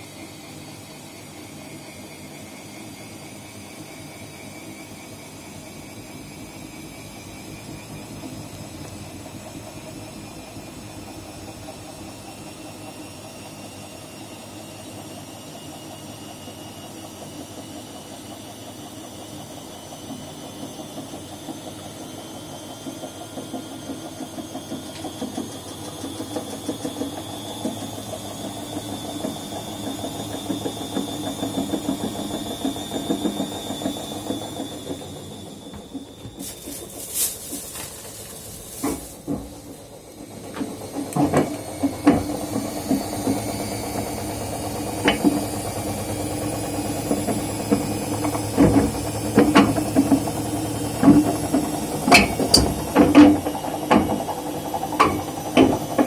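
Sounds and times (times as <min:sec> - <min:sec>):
washing machine motor whine: 0:00.0 - 0:56.0
rattling inside washing machine: 0:33.1 - 0:42.7, 0:45.0 - 0:45.5, 0:48.5 - 0:56.0.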